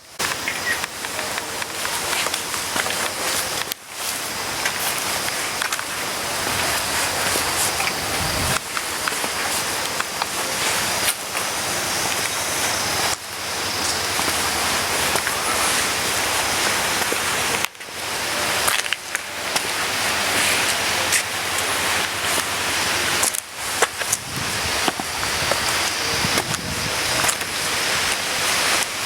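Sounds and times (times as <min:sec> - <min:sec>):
wind rushing over microphone: 0:04.3 - 0:17.3, 0:22.8 - 0:29.0.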